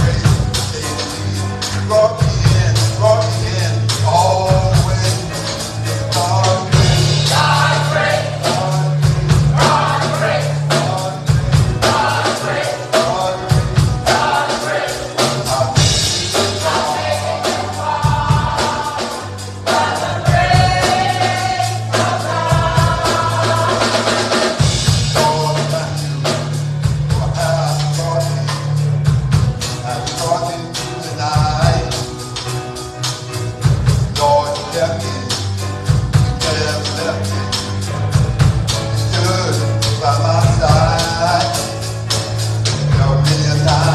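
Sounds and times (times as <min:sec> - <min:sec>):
steady drum beat: 0:00.0 - 0:43.9
sustained bass: 0:00.0 - 0:43.9
voices singing: 0:04.3 - 0:26.0.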